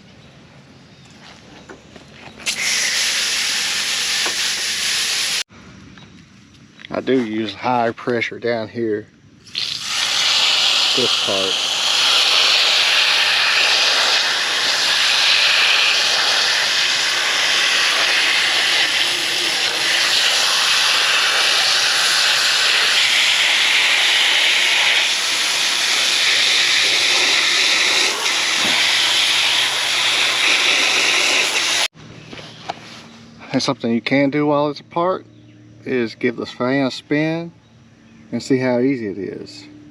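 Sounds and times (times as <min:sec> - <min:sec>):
high-pressure water spray hissing: 0:02.4 - 0:05.5, 0:09.5 - 0:31.9.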